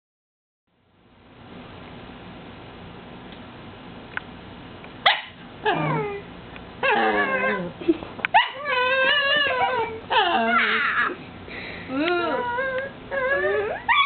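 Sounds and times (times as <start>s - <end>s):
dog whining and yowling: 5.1s - 11.2s, 12.0s - 14.0s.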